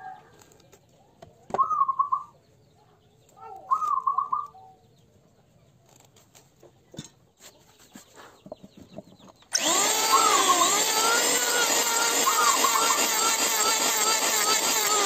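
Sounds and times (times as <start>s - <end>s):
tool cutting spinning wood: 9.5s - 15.0s
wood lathe motor running: 9.5s - 15.0s.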